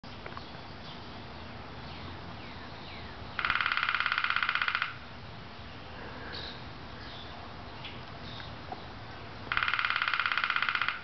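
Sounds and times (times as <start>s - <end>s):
woodpecker drumming: 3.4s - 5.1s, 9.4s - 11.0s.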